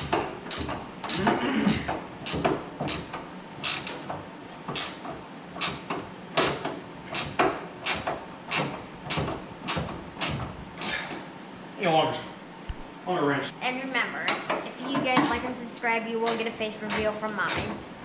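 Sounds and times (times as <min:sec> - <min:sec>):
ratchet wrench clicking: 0:02.3 - 0:04.1, 0:05.6 - 0:10.4.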